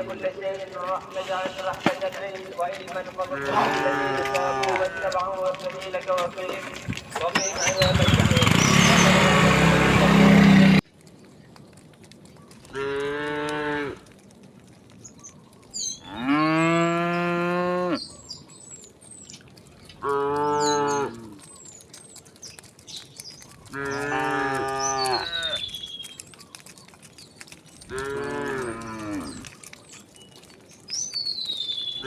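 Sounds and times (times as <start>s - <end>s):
cattle mooing: 0.0s - 10.8s, 12.7s - 14.0s, 16.1s - 18.0s, 20.0s - 21.4s, 23.7s - 25.7s, 27.9s - 29.5s.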